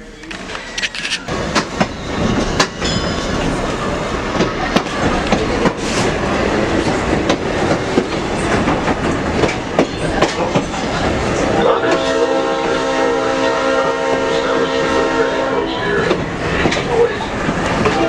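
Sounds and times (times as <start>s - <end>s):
wheels clanking on rail joints: 0.0s - 13.0s, 15.7s - 18.0s
train rumbling on track: 0.0s - 18.0s
high squeal: 0.6s - 3.9s.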